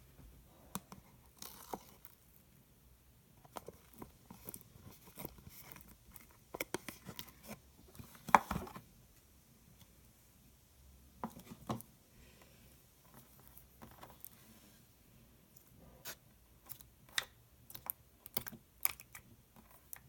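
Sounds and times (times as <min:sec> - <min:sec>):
slime squishing and clicking: 0:16.6 - 0:20.0.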